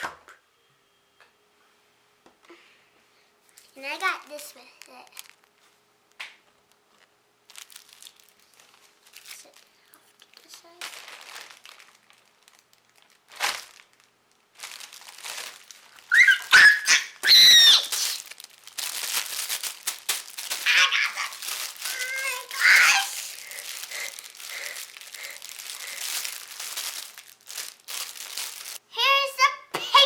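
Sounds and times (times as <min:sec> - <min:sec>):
plastic packaging crinkling: 0:03.6 - 0:28.8
high-pitched squeals: 0:16.1 - 0:18.2.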